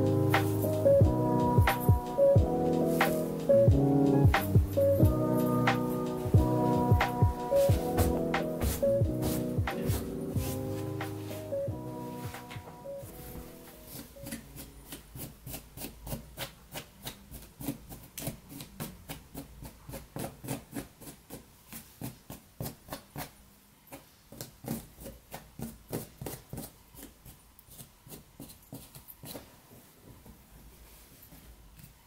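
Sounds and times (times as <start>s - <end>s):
rhythmic scrubbing strokes: 0.0s - 14.7s.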